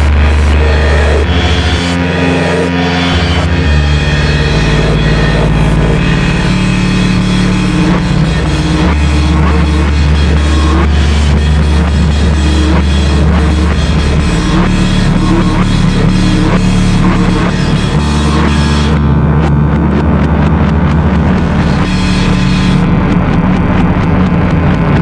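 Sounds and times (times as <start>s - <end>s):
regular pulsing hits: 0.0s - 24.9s
distorted noise wall: 0.0s - 25.0s
heavy low drone: 0.0s - 25.0s.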